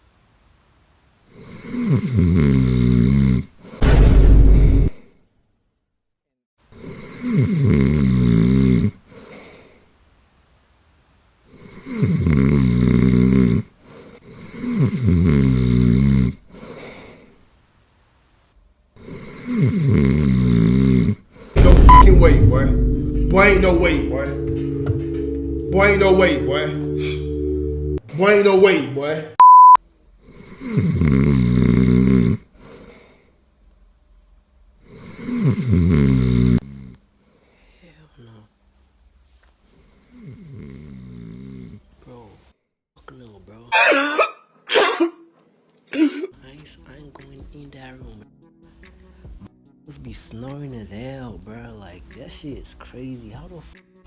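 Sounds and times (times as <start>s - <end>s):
loud deep snore: 1.4s - 3.6s, 6.8s - 9.0s, 11.6s - 13.7s, 14.3s - 16.4s, 19.0s - 21.2s, 30.4s - 32.5s, 34.9s - 37.0s, 40.1s - 41.8s
faint breath: 9.0s - 10.0s, 13.8s - 14.6s, 16.5s - 17.5s, 32.5s - 33.4s, 37.2s - 37.9s.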